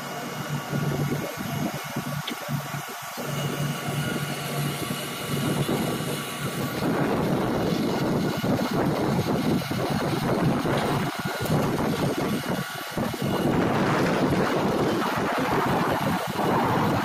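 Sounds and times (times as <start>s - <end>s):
large engine humming: 0.0s - 17.0s
rough rushing noise: 5.2s - 17.0s.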